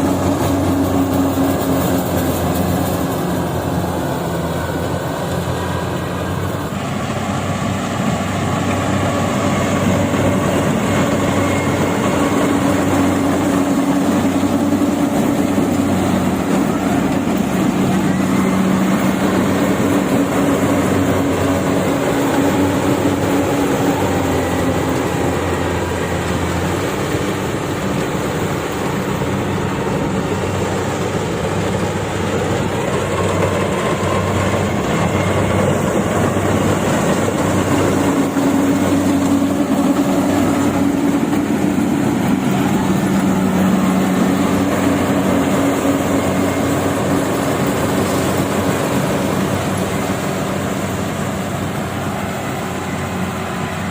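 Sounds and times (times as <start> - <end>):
cutting and threshing machinery: 0.0 - 53.9
diesel engine humming: 0.0 - 53.9.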